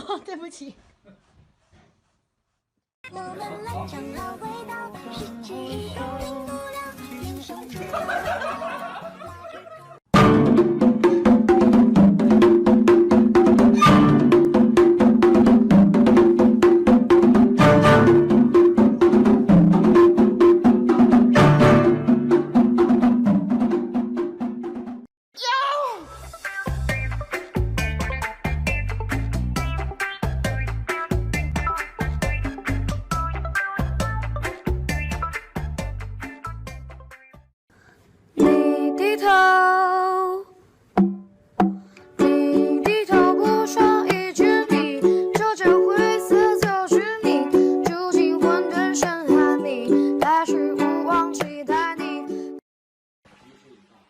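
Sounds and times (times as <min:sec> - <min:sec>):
music: 0:03.1 - 0:25.1, 0:26.0 - 0:37.5, 0:38.4 - 0:39.3, 0:41.0 - 0:52.6
wood-block percussion beat: 0:10.1 - 0:25.1, 0:41.0 - 0:41.9, 0:42.8 - 0:49.4
ukulele strumming: 0:10.2 - 0:22.9, 0:38.4 - 0:39.4, 0:42.2 - 0:52.6
plucked pitched notes: 0:10.2 - 0:23.6.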